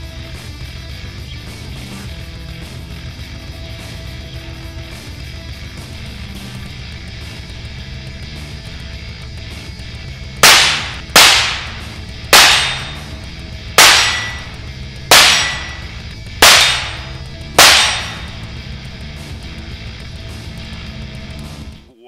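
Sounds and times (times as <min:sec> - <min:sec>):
revolver shots: 0:10.4 - 0:18.6.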